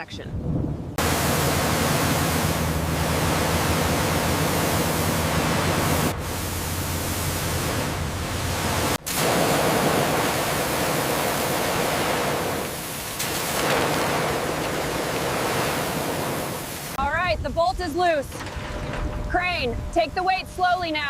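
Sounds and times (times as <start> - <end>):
low hum: 0.3 - 10.0, 18.4 - 21.0
steady rushing hiss: 1.0 - 17.0.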